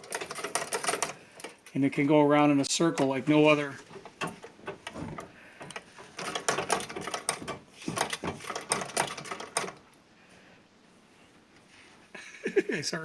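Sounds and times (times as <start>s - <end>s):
sewing machine clattering: 0.0s - 1.2s, 3.0s - 9.8s.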